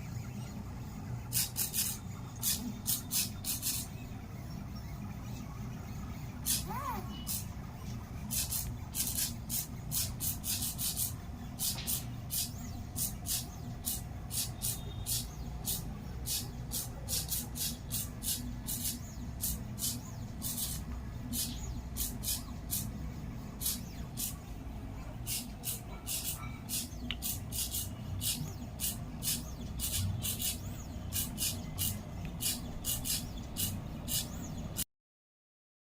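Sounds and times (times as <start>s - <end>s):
stepper motors humming: 0.0s - 34.8s
pen scratching on paper: 25.2s - 34.4s.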